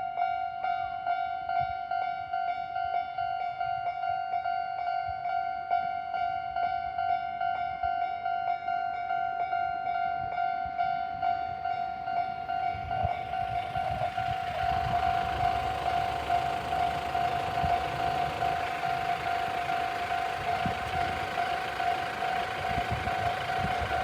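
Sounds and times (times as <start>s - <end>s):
train rumble and rail noise: 0.0s - 24.0s
level crossing electronic bell: 13.1s - 24.0s.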